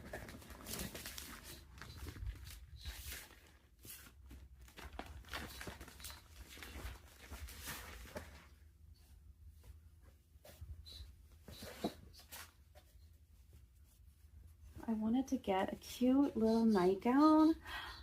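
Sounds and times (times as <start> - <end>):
crinkling wrap rustles: 0.0 - 8.6.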